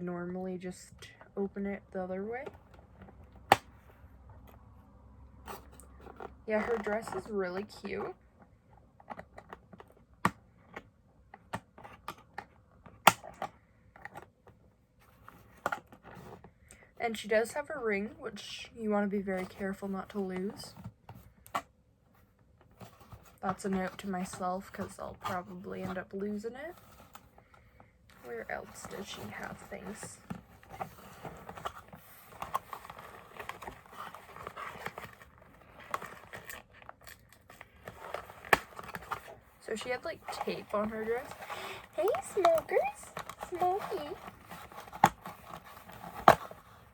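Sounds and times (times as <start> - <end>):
packaging clicks and taps: 26.8 - 46.9.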